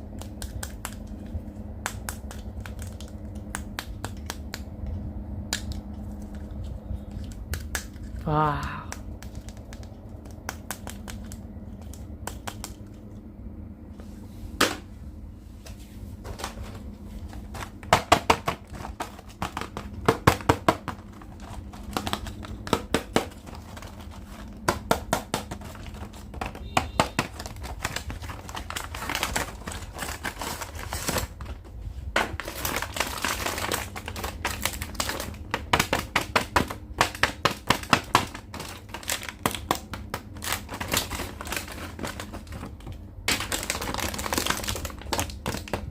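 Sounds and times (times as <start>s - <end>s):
plastic toys clicking and tapping: 0.0s - 4.9s, 5.5s - 13.1s, 17.5s - 31.6s, 32.2s - 45.9s
plastic crinkling and rustling: 15.7s - 45.9s.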